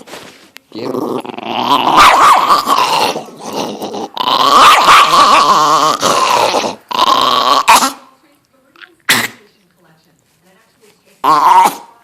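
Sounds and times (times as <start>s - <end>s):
dog growling: 0.7s - 8.0s, 11.2s - 12.0s.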